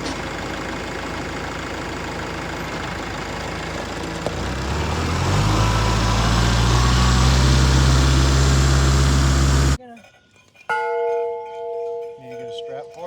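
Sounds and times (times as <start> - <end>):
tractor engine revving: 0.0 - 9.8.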